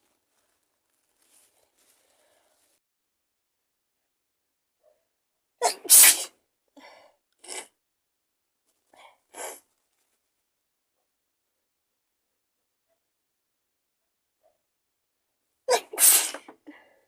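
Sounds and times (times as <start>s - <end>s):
quiet breathy sounds: 0.0s - 2.8s, 16.6s - 17.0s
person sneezing: 5.6s - 6.3s, 15.7s - 16.6s.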